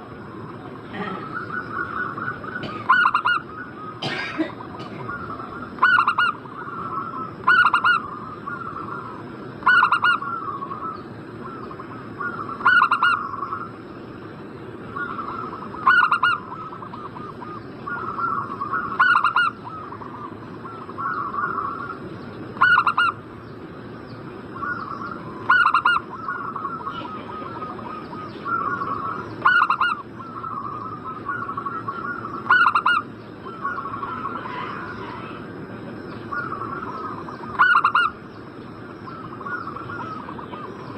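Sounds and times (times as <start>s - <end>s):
soft rolling cooing: 0.0s - 13.7s
dove call: 0.0s - 40.9s.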